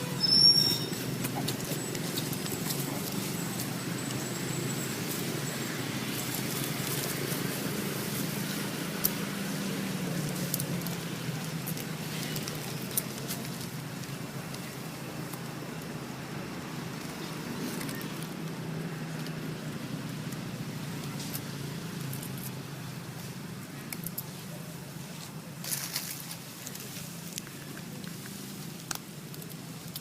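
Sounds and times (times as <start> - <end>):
vehicle engine running at low revs: 0.8 - 30.0
small ticks and rustles: 6.1 - 30.0.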